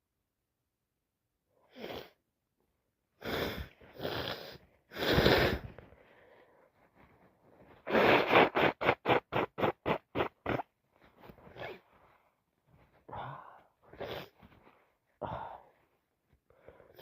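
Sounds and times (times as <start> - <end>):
person sniffling: 3.2 - 7.1, 7.7 - 12.1
person sneezing: 7.8 - 10.7.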